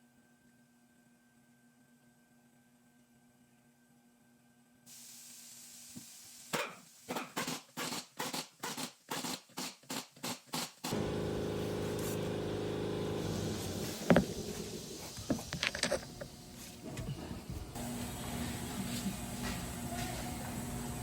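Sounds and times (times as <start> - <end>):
car engine cranking and idling: 10.9 - 17.1.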